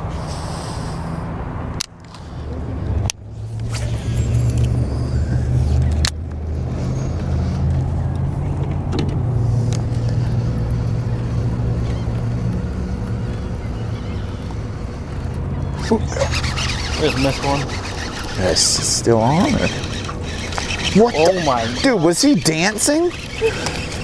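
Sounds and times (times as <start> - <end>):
small boat motor droning: 2.2 - 24.0
sharp clicks: 15.2 - 24.0.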